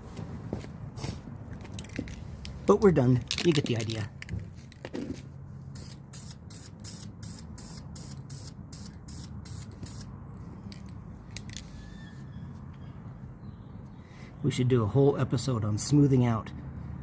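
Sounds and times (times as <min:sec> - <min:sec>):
spray paint can bursts: 0:05.8 - 0:10.1.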